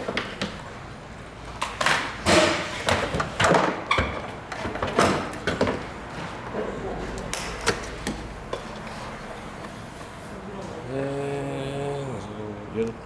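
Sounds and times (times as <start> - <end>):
car parts knocking and clattering: 1.6 - 9.0.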